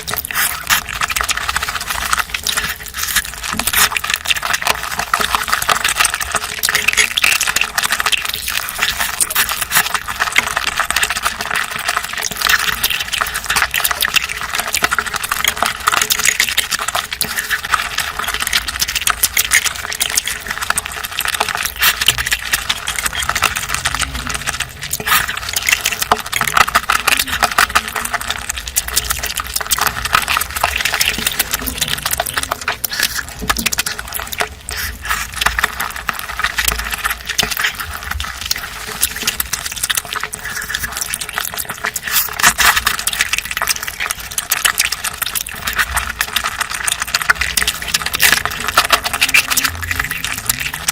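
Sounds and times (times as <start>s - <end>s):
chewing: 0.0s - 50.9s
wet mouth clicks: 16.0s - 50.9s.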